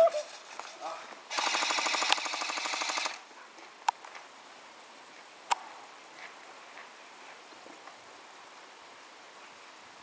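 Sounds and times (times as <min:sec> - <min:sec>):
airsoft gun full-auto burst: 0:01.3 - 0:03.2.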